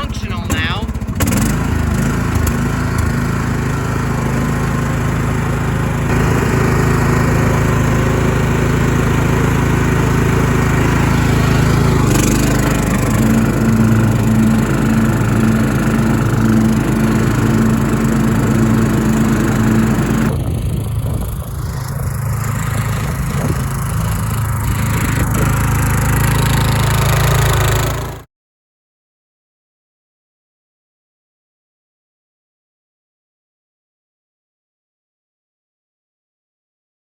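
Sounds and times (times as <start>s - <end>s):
lawn tractor engine running: 0.0s - 28.2s.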